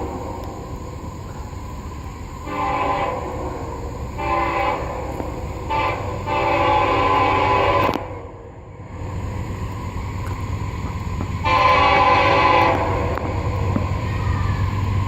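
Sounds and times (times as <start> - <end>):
low rumble of moving train: 0.0 - 15.0
locomotive air horn blasts: 2.4 - 8.2, 11.4 - 13.3.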